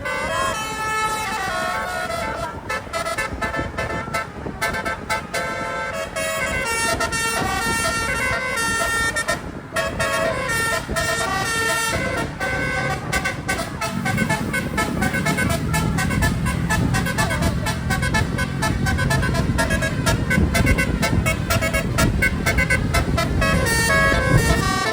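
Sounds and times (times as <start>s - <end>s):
multi-trumpet bus horn playing tune: 0.0s - 24.9s
low rumble: 12.1s - 24.6s.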